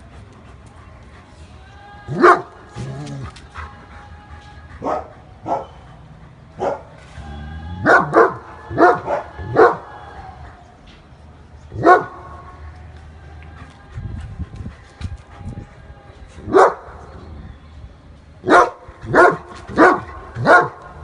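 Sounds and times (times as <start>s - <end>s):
dog barking: 11.8s - 12.1s, 18.5s - 20.8s.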